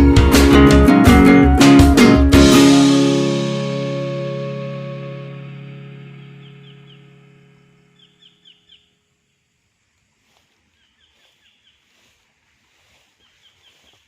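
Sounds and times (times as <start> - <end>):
background music: 0.0 - 7.9
faint bird chirps: 6.2 - 7.2, 7.9 - 9.0, 10.2 - 14.0.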